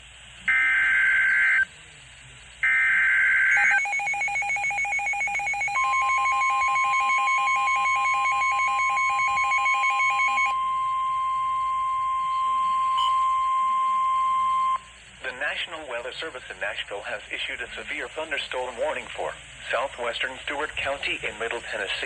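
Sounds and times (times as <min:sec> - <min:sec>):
steady warning tone: 0:02.6 - 0:15.0
two-pitch electronic alarm beeping: 0:02.6 - 0:15.0
screeching digital header bursts: 0:02.7 - 0:15.0.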